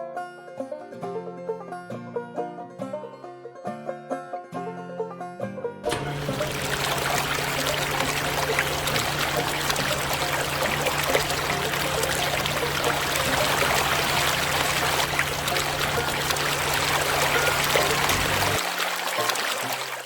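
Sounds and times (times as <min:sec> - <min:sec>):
low hum: 0:05.9 - 0:18.6
water trickling and pouring: 0:05.9 - 0:20.0.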